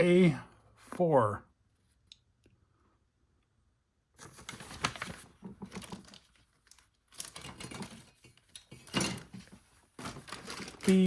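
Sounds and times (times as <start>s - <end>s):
plastic bags crinkling: 4.4s - 11.0s.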